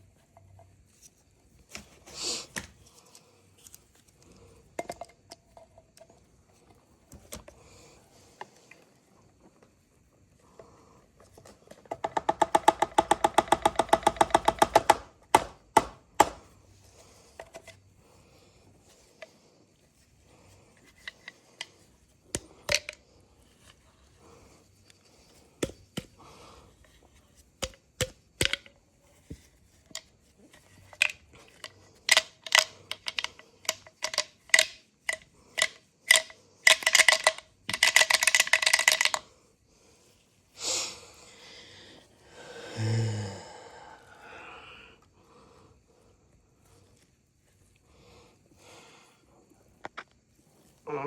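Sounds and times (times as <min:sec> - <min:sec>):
tools and parts clicking: 0:01.7 - 0:06.3, 0:20.7 - 0:23.8, 0:26.8 - 0:39.3.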